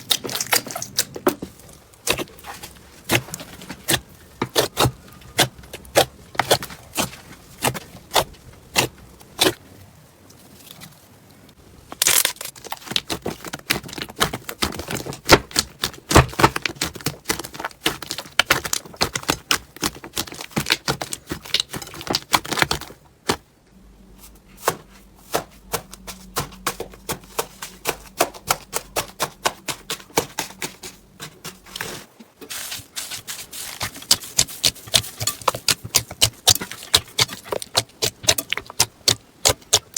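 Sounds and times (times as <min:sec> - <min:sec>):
faint steady hum: 0:22.8 - 0:30.0
slime crackling and popping: 0:33.8 - 0:39.9.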